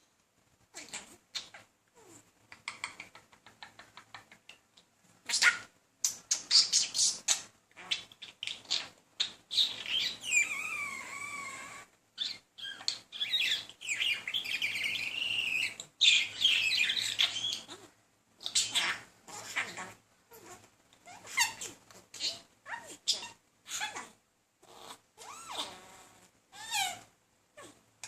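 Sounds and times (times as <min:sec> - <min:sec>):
budgerigar chattering and warbling: 0:12.2 - 0:20.5.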